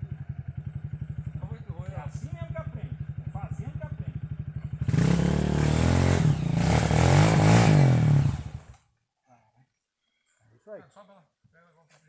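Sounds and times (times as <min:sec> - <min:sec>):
motorcycle engine revving: 0:00.0 - 0:08.8.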